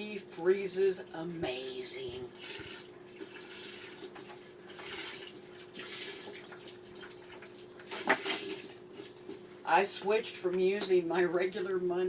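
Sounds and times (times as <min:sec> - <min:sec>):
steady hum: 0:00.0 - 0:05.8.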